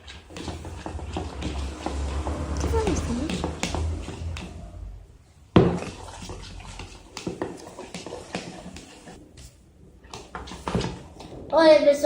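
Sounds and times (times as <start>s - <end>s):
slime being stirred: 0.0s - 11.6s.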